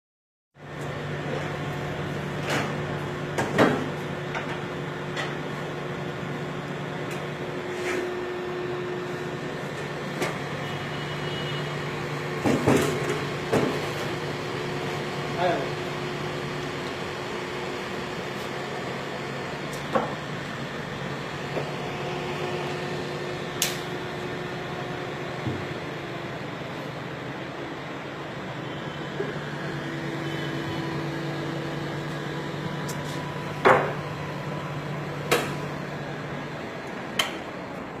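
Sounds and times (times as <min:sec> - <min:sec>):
low machine hum: 0:00.6 - 0:38.0
sharp clicks and knocks: 0:37.2 - 0:37.4.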